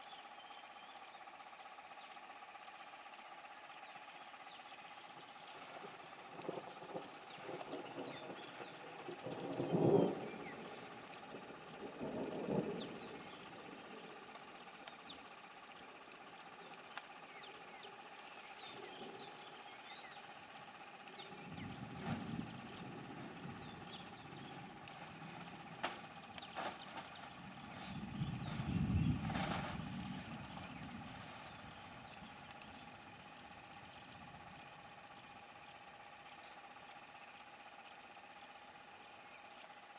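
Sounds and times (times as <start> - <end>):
insects chirping: 0.0 - 39.9.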